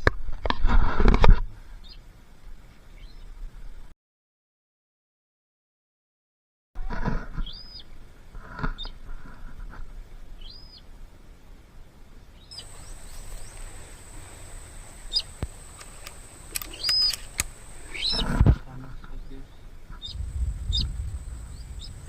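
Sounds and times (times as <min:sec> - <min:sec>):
small bird calling: 0:12.5 - 0:18.4, 0:20.0 - 0:22.0.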